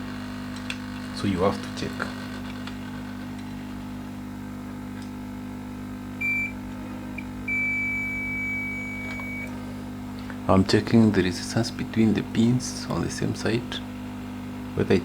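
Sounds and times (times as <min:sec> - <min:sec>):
steady low hum: 0:00.0 - 0:15.0
multimeter continuity beeping: 0:06.2 - 0:09.6.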